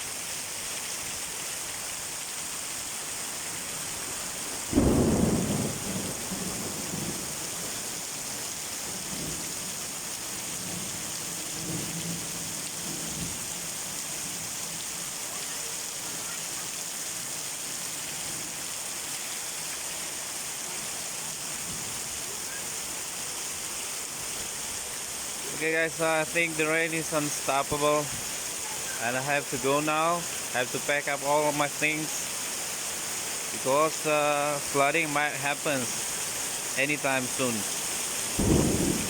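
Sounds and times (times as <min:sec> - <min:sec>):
heavy rain hissing: 0:00.0 - 0:39.0
thunderclap and rolling rumbles: 0:04.6 - 0:07.8, 0:38.3 - 0:39.0.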